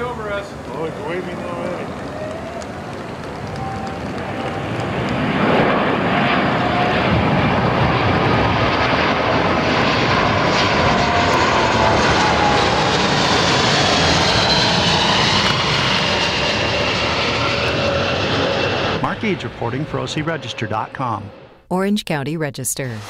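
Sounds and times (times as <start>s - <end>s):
jet engines during flyby: 0.0s - 21.5s.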